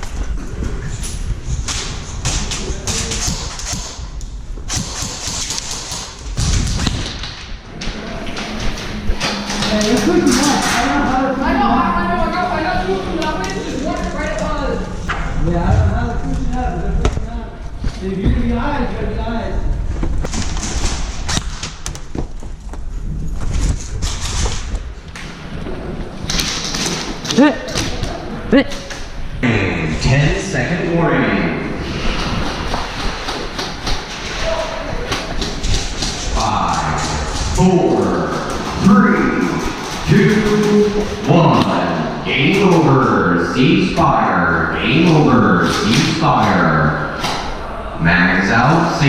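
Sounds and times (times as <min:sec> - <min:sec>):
airsoft gun shots: 0:04.7 - 0:07.2
rumble of movement and gear: 0:14.9 - 0:18.6.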